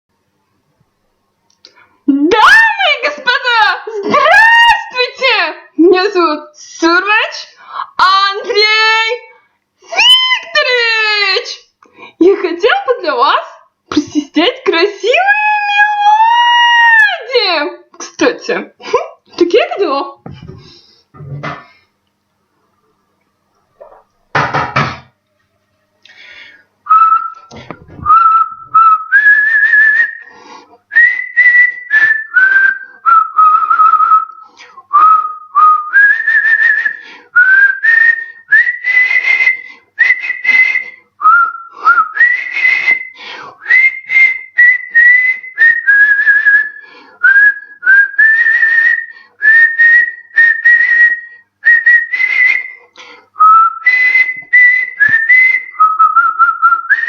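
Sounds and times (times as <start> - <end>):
man whistling a melody: 26.9 - 30.3, 30.9 - 52.8, 53.4 - 57.0.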